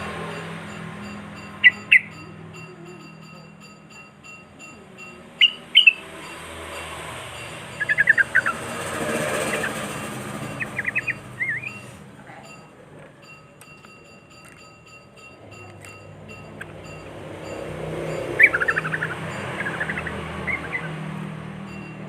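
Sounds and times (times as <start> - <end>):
bird chirping song: 0.0 - 3.5, 5.3 - 11.9, 16.4 - 21.4.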